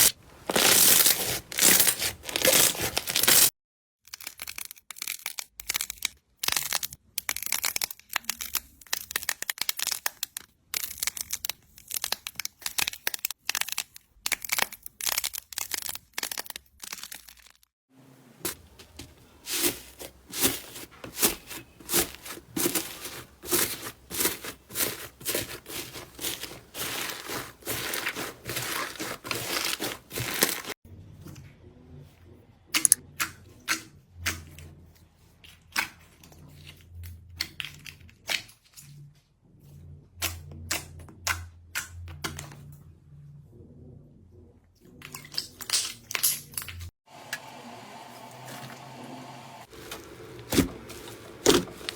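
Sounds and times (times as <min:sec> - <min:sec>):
crunchy slime crackling and popping: 0:00.0 - 0:03.5, 0:04.1 - 0:17.7, 0:18.5 - 0:30.8, 0:49.7 - 0:51.9.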